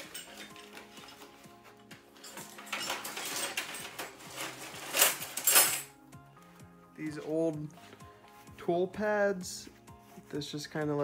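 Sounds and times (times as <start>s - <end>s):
metal tools clinking in drawer: 0.0s - 6.0s
background music: 0.0s - 11.0s.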